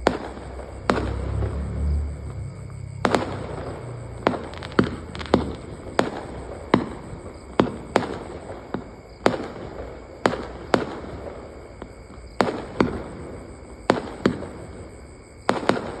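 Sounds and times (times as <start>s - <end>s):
firecracker bangs with echo: 0.0s - 11.5s.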